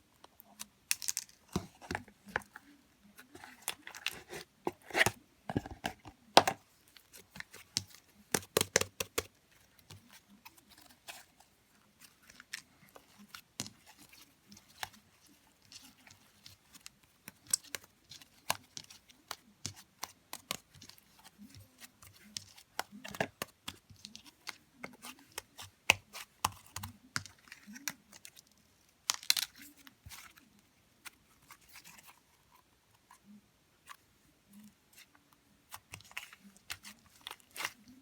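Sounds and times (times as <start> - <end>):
clicks and taps of small objects: 0.2 - 2.6, 7.3 - 10.1, 15.7 - 30.2.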